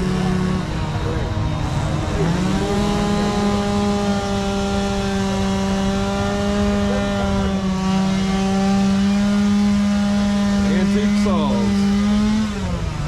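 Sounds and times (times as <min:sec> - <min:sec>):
small engine buzzing drone: 0:00.0 - 0:13.0.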